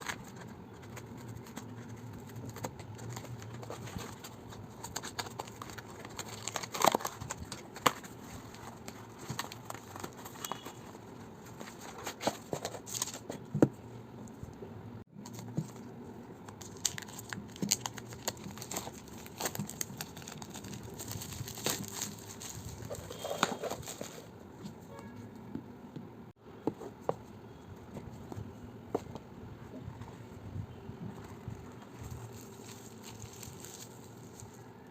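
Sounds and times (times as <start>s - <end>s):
plastic and paper crinkling: 0.0s - 13.5s, 15.2s - 24.3s, 31.1s - 34.8s.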